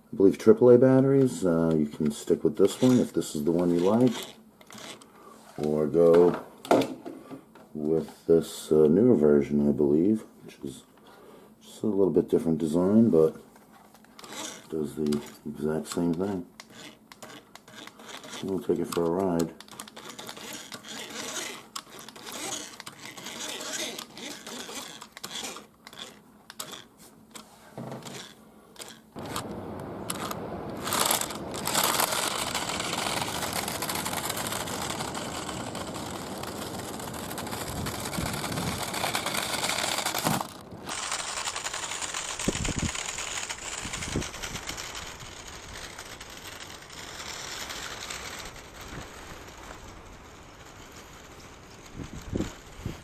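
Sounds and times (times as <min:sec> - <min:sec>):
toy car electric motor running: 0:02.1 - 0:05.8, 0:14.1 - 0:29.5, 0:30.1 - 0:53.0
controller clicks: 0:14.2 - 0:26.9.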